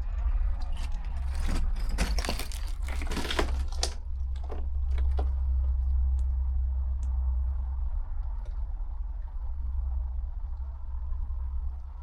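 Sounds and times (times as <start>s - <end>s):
steady low rumble: 0.0s - 12.0s
footsteps crunching over rubble: 0.5s - 5.4s.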